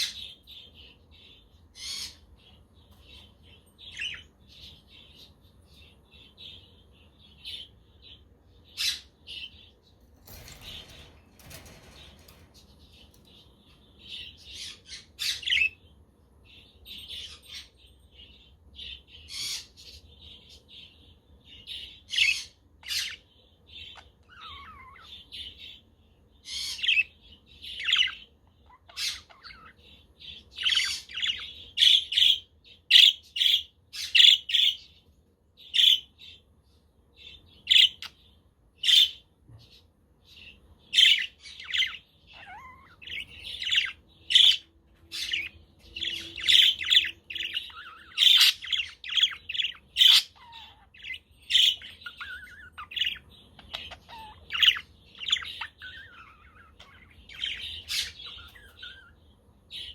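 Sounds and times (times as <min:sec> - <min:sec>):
budgerigars chirping: 0:00.0 - 0:03.3, 0:18.8 - 0:21.0, 0:21.6 - 0:34.9, 0:40.4 - 0:59.9.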